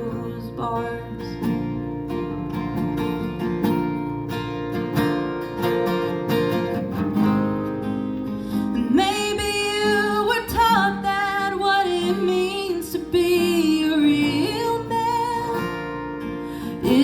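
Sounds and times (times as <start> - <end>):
woman singing: 0.0 - 1.6, 8.7 - 17.0
strummed acoustic guitar: 0.0 - 17.0.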